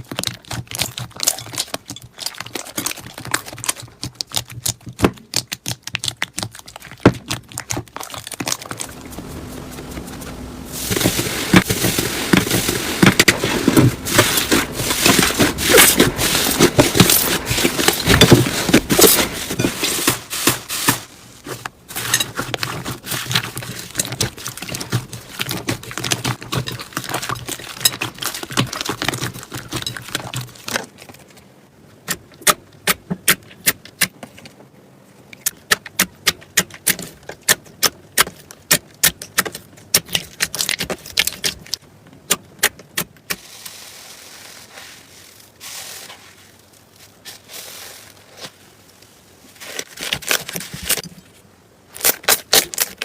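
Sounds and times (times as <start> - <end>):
slime squishing rustle: 0.0 - 31.6, 43.2 - 53.0.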